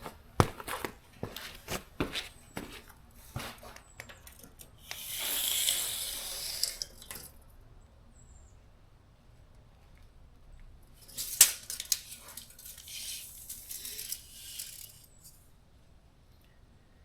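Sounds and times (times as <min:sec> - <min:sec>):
spray bottle hissing: 0:05.0 - 0:06.8.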